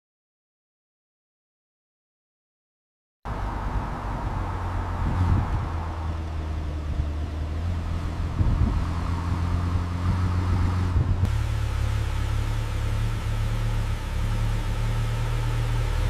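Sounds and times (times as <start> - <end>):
car engine idling: 11.0 - 16.0.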